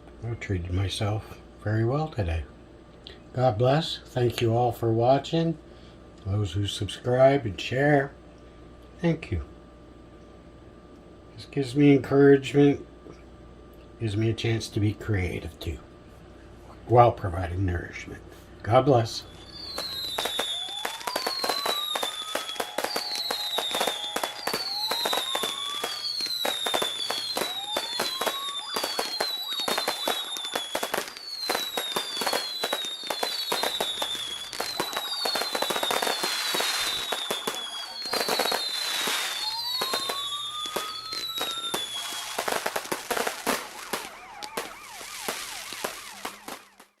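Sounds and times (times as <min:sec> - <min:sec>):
lower rising bird calls: 0:19.2 - 0:46.6
bird whistling downward: 0:19.2 - 0:46.9
dense crackling: 0:19.3 - 0:47.0.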